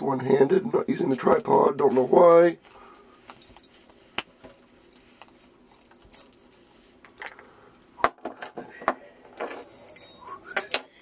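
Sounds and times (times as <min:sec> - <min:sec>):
keys jangling: 0:04.4 - 0:06.6, 0:09.4 - 0:11.0.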